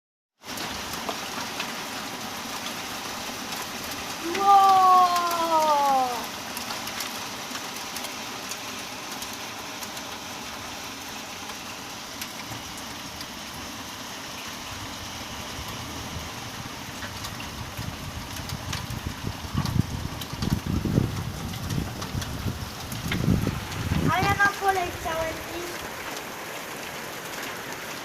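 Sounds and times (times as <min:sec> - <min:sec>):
heavy rain hiss: 0:00.4 - 0:28.0
hailstones ticking: 0:00.5 - 0:28.0
wind gusts on microphone: 0:17.4 - 0:25.9.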